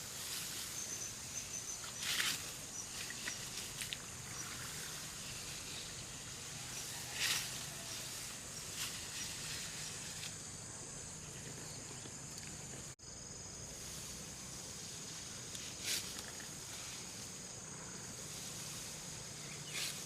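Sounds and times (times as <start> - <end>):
rustling swishes: 0.0 - 10.4, 13.8 - 17.5, 18.1 - 20.0
even hiss: 0.0 - 20.0.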